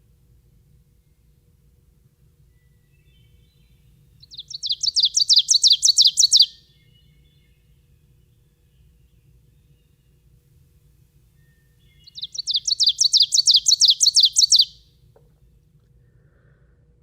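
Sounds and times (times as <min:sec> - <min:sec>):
ovenbird singing: 0:02.6 - 0:10.2, 0:11.4 - 0:14.8.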